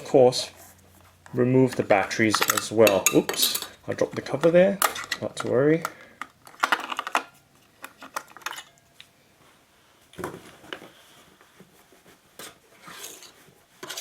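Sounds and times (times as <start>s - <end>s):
batteries and plastic clicking: 4.3s - 8.6s.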